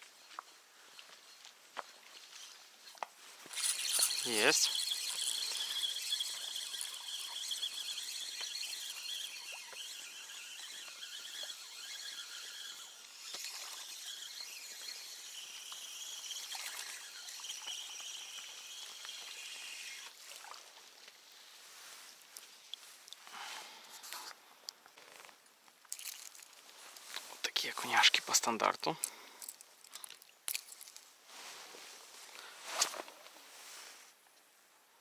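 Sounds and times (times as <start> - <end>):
faint clicks and rustles: 0.3 - 21.2
insects chirping: 3.4 - 20.1.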